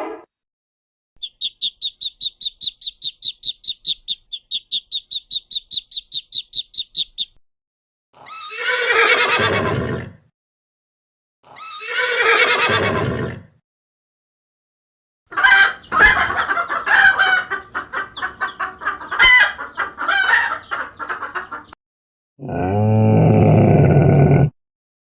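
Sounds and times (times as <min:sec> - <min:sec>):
chicken clucking: 0:15.3 - 0:21.8
drawn-out animal call: 0:15.3 - 0:21.8.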